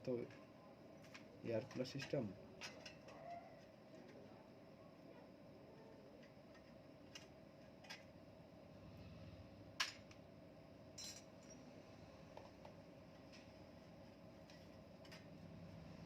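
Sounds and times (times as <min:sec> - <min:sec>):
light metal clinks: 0:11.0 - 0:11.8.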